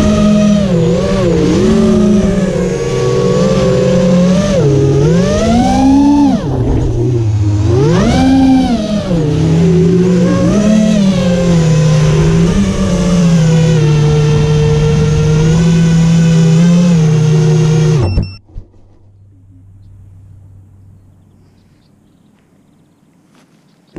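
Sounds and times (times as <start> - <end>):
quadcopter motors whining: 0.0 - 18.4.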